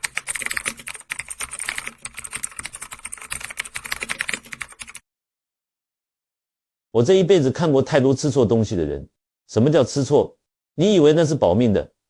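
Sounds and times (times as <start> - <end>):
rapid typing on keyboard: 0.0 - 5.0.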